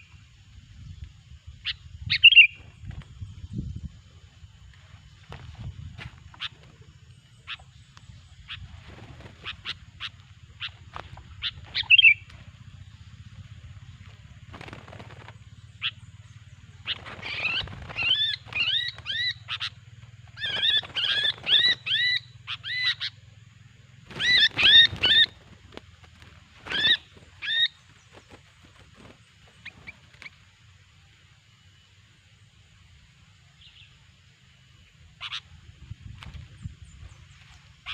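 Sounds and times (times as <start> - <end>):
faint low hum: 0.0 - 37.9
bird chirping and whistling: 1.7 - 2.6, 11.4 - 12.2, 16.9 - 19.7, 20.4 - 23.2, 24.1 - 25.4.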